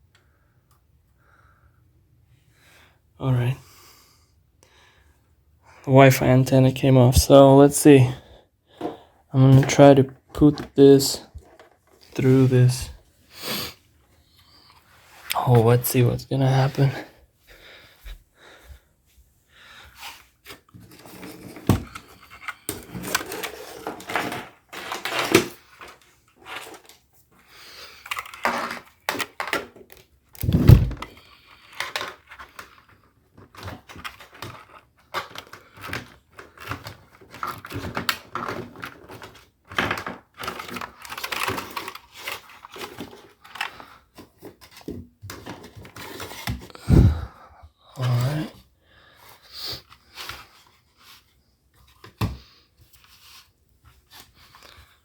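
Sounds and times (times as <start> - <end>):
cables rustling and scraping: 5.9 - 13.1, 19.8 - 47.3
loud thump: 30.4 - 31.0.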